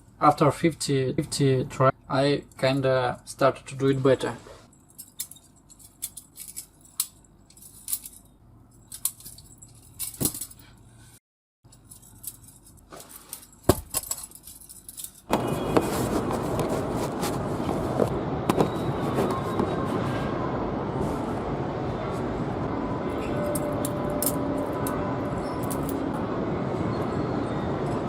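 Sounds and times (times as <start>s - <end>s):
steady rushing noise: 15.4s - 26.9s.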